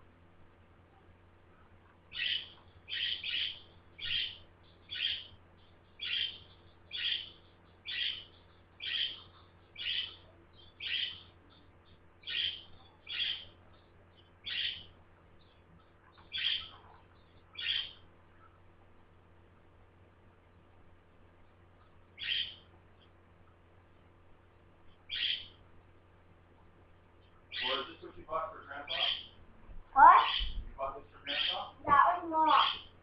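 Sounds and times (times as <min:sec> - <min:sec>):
budgerigar chirping: 0:02.1 - 0:15.6, 0:16.2 - 0:18.0, 0:22.2 - 0:23.1, 0:25.1 - 0:25.6, 0:27.5 - 0:28.2, 0:28.8 - 0:29.3, 0:30.0 - 0:30.6, 0:31.2 - 0:32.9.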